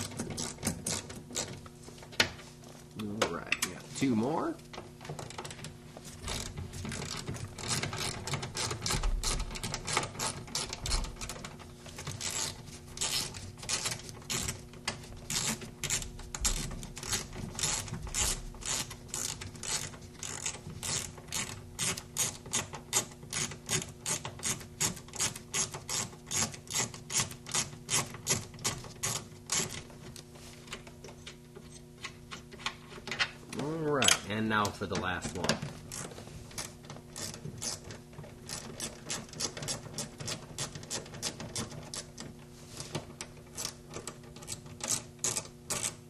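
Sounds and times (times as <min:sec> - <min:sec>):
ratchet clicking: 0:06.3 - 0:14.6, 0:15.3 - 0:29.8, 0:35.9 - 0:42.2, 0:43.5 - 0:46.0.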